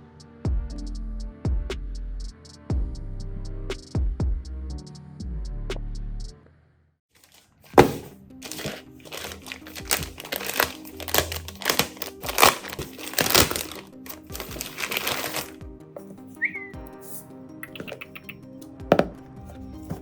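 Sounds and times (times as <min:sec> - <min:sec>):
background music: 0:00.0 - 0:06.4, 0:07.3 - 0:20.0
crinkling handling noise: 0:07.2 - 0:16.4.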